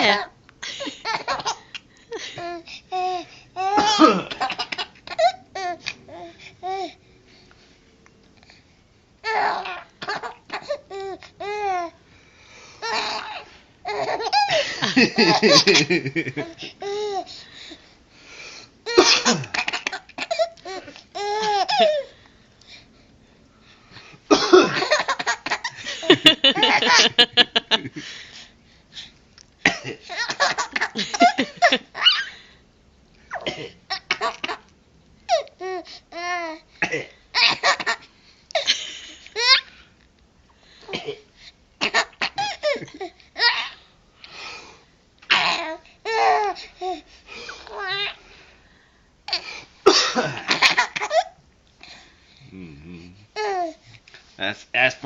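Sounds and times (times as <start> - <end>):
man coughing: 3.7 - 4.9, 18.9 - 20.0, 24.3 - 25.6, 29.6 - 31.5, 36.8 - 37.9, 40.9 - 41.2, 49.8 - 51.3
baby giggling: 12.8 - 17.2.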